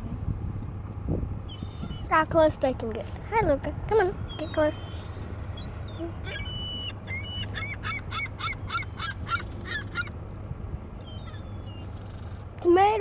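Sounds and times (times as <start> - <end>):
gulls calling: 1.5 - 2.3, 4.1 - 12.5.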